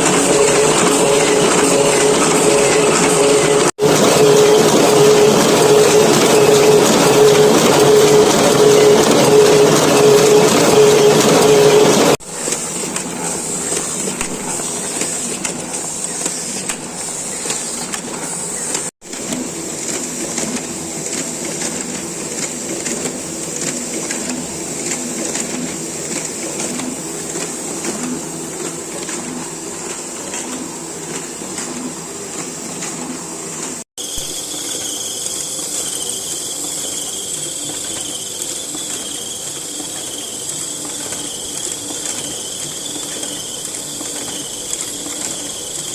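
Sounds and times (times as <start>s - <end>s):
printing press clattering: 0.0s - 33.8s.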